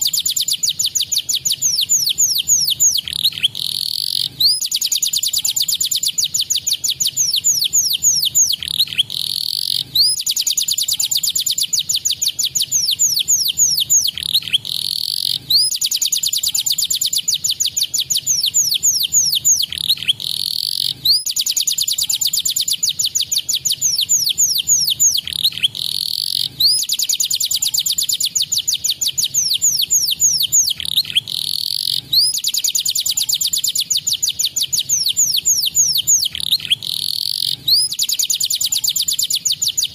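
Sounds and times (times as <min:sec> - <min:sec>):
canary singing trills and whistles: 0:00.0 - 0:39.9.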